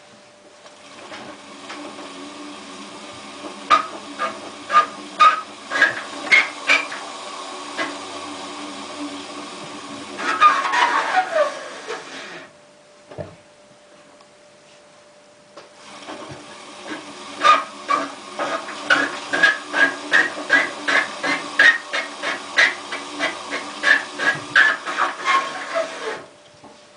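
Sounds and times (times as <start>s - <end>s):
washing machine drum clanking: 1.0s - 11.0s, 16.0s - 25.8s
scraping screech: 3.5s - 12.5s, 16.8s - 26.3s.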